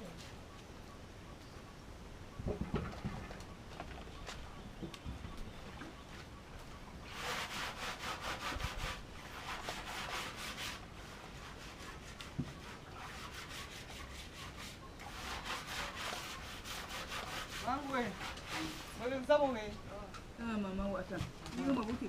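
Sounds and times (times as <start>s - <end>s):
fast rhythmic rubbing strokes: 7.0s - 19.6s.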